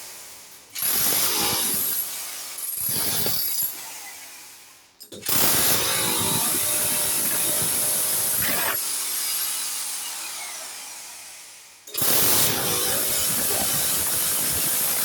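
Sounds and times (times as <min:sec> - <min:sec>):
power tool running: 0:05.2 - 0:09.1, 0:12.0 - 0:15.0.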